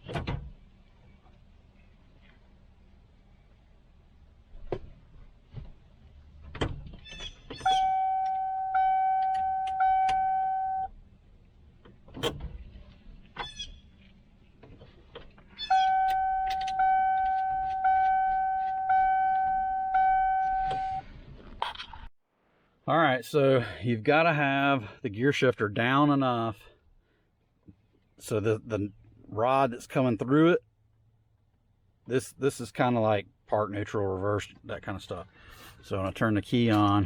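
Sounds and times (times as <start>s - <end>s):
dashboard warning chime: 7.6s - 10.9s, 15.7s - 21.1s.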